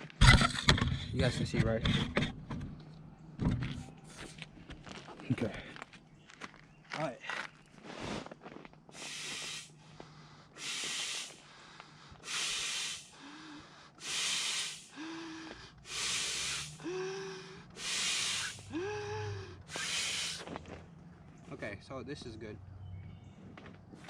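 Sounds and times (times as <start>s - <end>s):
air pump whooshing: 9.0s - 9.8s, 10.6s - 11.4s, 12.2s - 13.2s, 14.0s - 15.0s, 15.8s - 16.9s, 17.7s - 18.9s, 19.6s - 20.5s.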